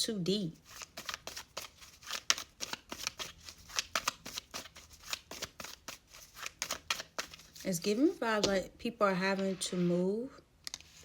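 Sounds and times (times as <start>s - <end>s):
cards being shuffled: 0.6s - 8.6s.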